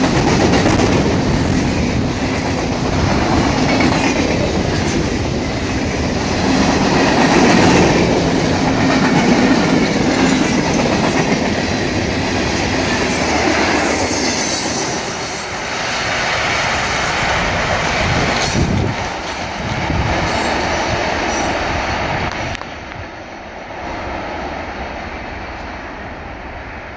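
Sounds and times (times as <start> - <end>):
freight train rumbling past: 0.0 - 26.9.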